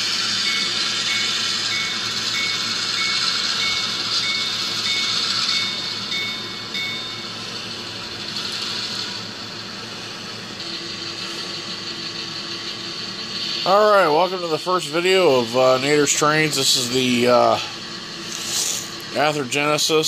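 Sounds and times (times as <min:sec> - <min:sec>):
locomotive bell ringing: 0:00.0 - 0:09.2, 0:13.6 - 0:18.1
model locomotive running sound: 0:00.0 - 0:20.0.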